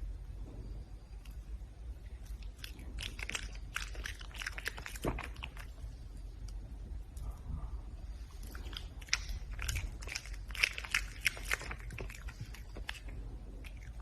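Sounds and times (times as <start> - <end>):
animal crunching food: 2.0 - 6.6, 8.2 - 14.0.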